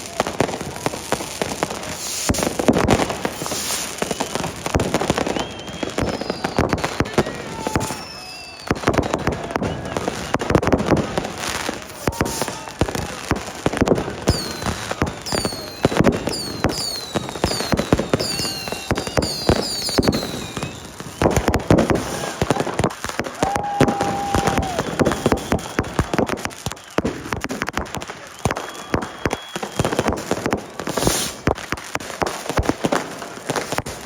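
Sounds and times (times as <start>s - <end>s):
fireworks bangs and crackling: 0.0s - 34.0s
falling firework whistles: 0.1s - 31.6s
held whistle-like tone: 5.0s - 10.2s, 14.3s - 22.5s, 23.6s - 27.2s, 28.2s - 30.2s.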